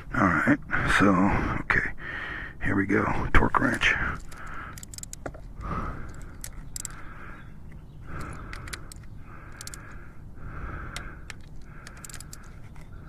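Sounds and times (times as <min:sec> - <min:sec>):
ratcheting torque wrench clicks: 0:03.6 - 0:07.2, 0:08.1 - 0:10.2, 0:10.8 - 0:13.0.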